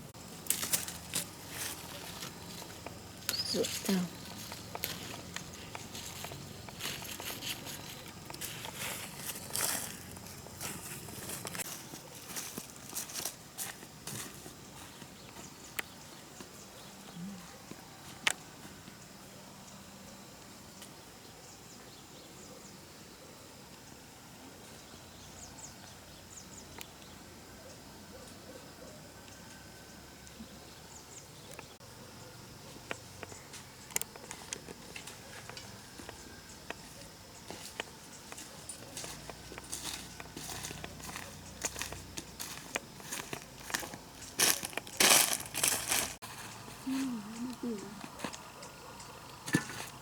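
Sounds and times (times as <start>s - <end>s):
dry leaves rustling and crackling: 0.3s - 14.4s, 38.8s - 48.2s.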